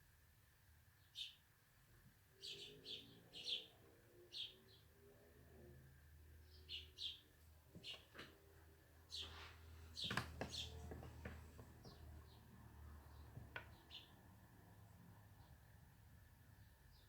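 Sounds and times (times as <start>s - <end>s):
sparrows chirping: 1.0s - 1.5s, 2.3s - 5.2s, 6.4s - 8.3s, 9.1s - 15.8s, 16.4s - 17.0s.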